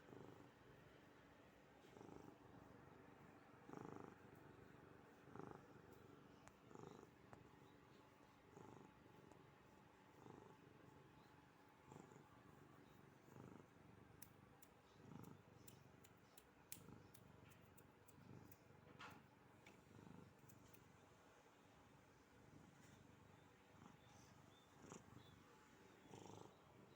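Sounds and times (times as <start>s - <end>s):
cat purring: 0.0s - 21.0s, 22.2s - 26.9s
faint clicks: 14.2s - 21.0s.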